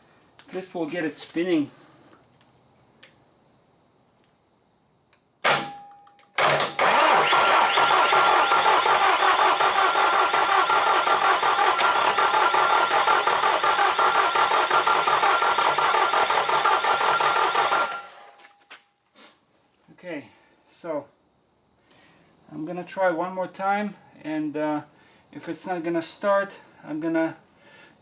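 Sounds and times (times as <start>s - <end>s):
diesel engine cranking: 6.4s - 18.4s.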